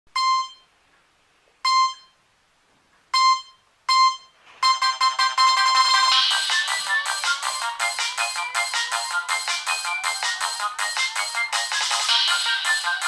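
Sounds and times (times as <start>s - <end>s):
short electronic beeps: 0.1s - 0.7s, 1.6s - 2.2s, 3.1s - 6.4s
fast synthesized ringtone melody: 3.4s - 13.0s.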